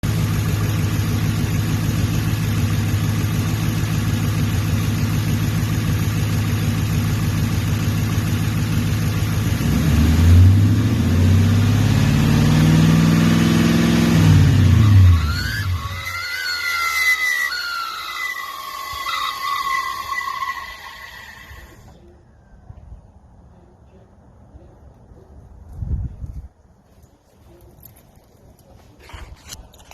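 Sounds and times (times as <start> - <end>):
car engine idling and revving: 0.0 - 16.1, 16.9 - 22.0
chirping whistle: 14.9 - 21.8.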